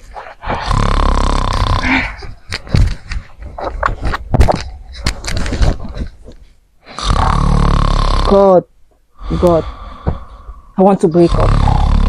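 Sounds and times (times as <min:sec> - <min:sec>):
person snoring: 0:00.4 - 0:02.4, 0:06.8 - 0:08.6, 0:09.2 - 0:10.4, 0:11.2 - 0:12.0.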